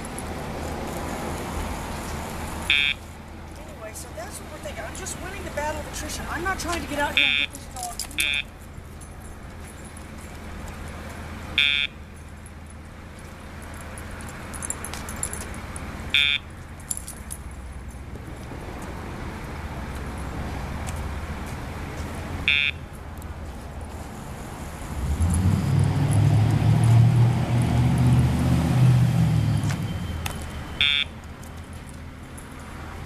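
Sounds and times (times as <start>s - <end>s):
low traffic hum: 0.0s - 33.0s
short electronic beeps: 2.7s - 3.0s, 7.2s - 7.6s, 8.2s - 8.5s, 11.6s - 12.0s, 16.2s - 16.5s, 22.5s - 22.8s, 29.9s - 31.2s.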